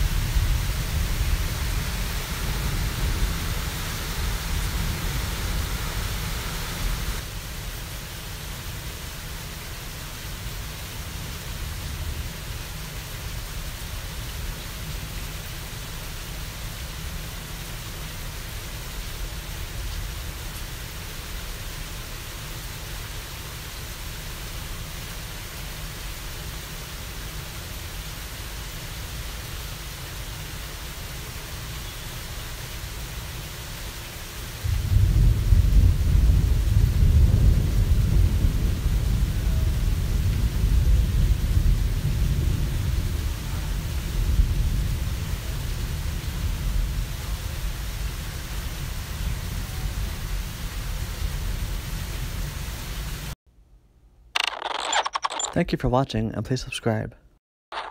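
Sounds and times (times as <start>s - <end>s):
low thunder rumble: 0.0s - 7.3s, 34.6s - 47.3s
rain hissing: 0.0s - 53.4s.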